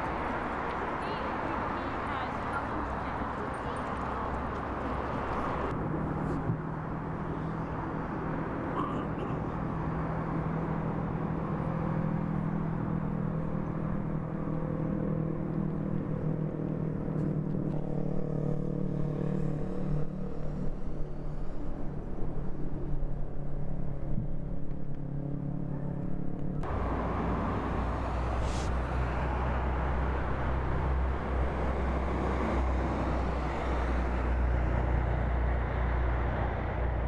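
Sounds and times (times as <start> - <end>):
machinery engine humming: 26.6 - 37.0.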